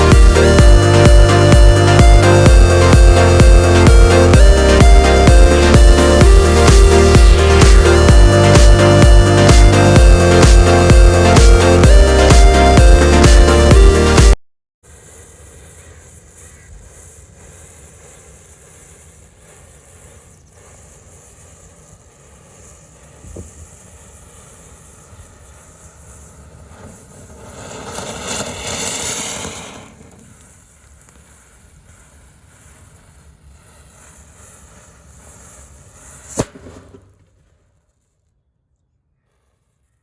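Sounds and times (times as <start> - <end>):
firecrackers hissing burst: 0.0 - 38.3
firecracker sharp crack: 22.9 - 37.9.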